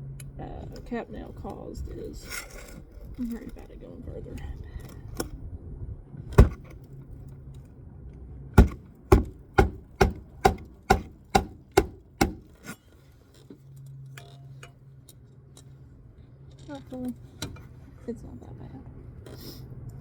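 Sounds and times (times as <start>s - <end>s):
hammer striking nail: 6.3s - 6.8s, 8.6s - 12.7s.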